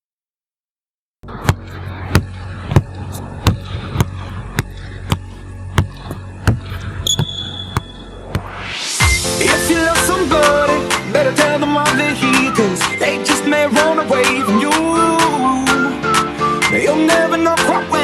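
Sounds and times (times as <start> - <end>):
percussive beat music: 1.5 - 8.6.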